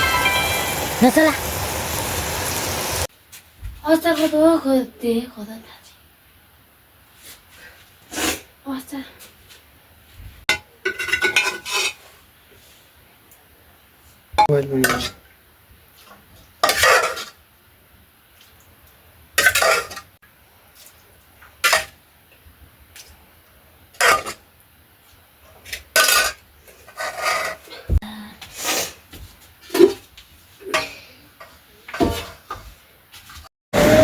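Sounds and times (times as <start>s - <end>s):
metal dishes and spoons clattering: 10.5s - 12.0s, 14.4s - 15.2s, 16.6s - 17.4s, 19.4s - 20.1s, 24.0s - 24.4s, 25.7s - 26.4s, 30.8s - 32.6s.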